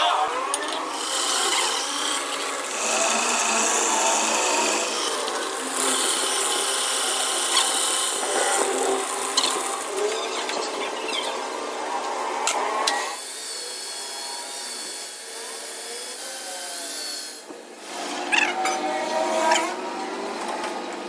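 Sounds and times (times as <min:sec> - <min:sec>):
power tool grinding metal: 0:00.8 - 0:10.0, 0:12.4 - 0:17.5.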